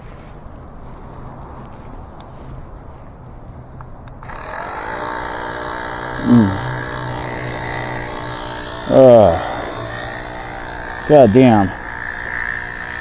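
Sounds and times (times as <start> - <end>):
small electric motor humming: 4.0 - 13.0
man groaning: 6.2 - 6.9, 8.8 - 9.9.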